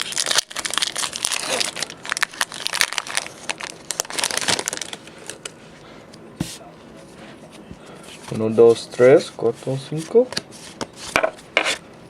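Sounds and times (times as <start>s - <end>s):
foil wrapper crinkling: 0.0s - 5.6s.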